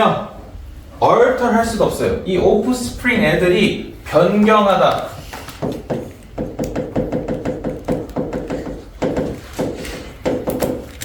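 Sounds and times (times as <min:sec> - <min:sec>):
writing taps and scratching on board: 0:05.3 - 0:10.9.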